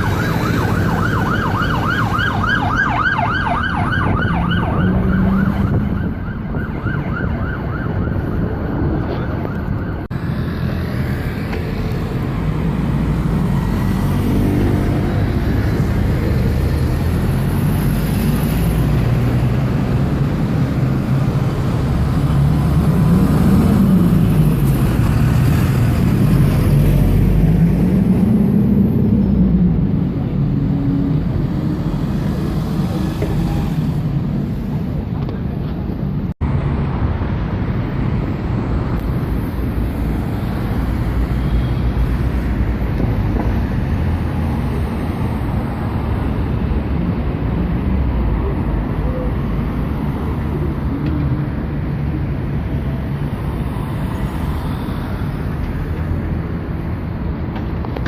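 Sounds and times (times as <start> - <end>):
bus engines pulling away: 0.0 - 6.3, 8.6 - 58.0
emergency vehicle siren: 0.0 - 11.4
road traffic: 0.0 - 58.0.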